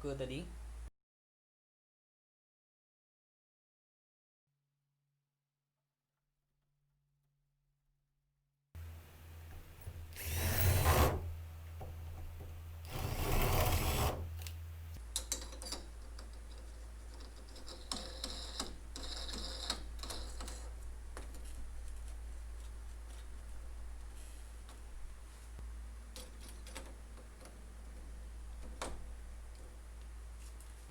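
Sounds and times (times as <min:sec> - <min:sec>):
cordless drill driving screws: 0:09.8 - 0:11.3, 0:12.8 - 0:14.6.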